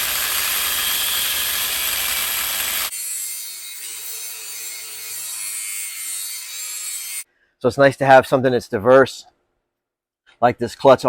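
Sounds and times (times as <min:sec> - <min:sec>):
power tool grinding metal: 0:00.0 - 0:07.2.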